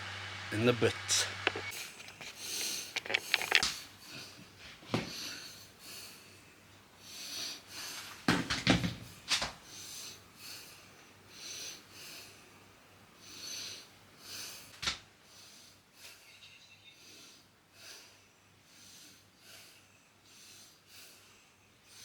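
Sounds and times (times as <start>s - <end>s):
handling clicks and knocks: 1.1s - 3.8s
soft breathing puffs: 1.1s - 6.4s.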